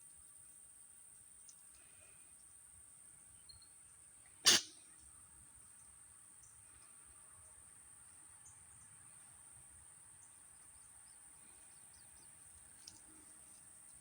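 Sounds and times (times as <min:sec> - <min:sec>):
faint high-pitched hiss: 0:00.0 - 0:14.0
faint high chirps: 0:03.4 - 0:03.8.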